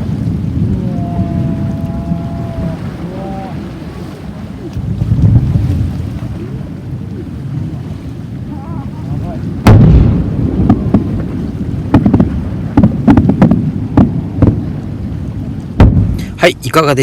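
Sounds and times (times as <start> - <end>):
wind on microphone: 0.0 - 16.4
distant fireworks bangs: 9.6 - 14.7.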